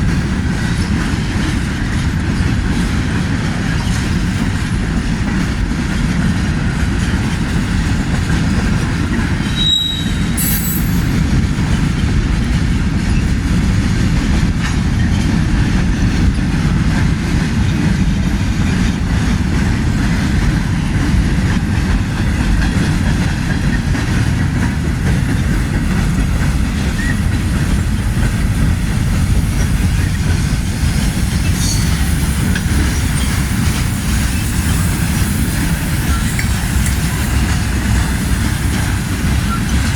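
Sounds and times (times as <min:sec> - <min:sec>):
train wheels rumbling on rails: 0:00.0 - 0:39.9
high wheel squeal: 0:09.4 - 0:11.2, 0:31.1 - 0:39.9.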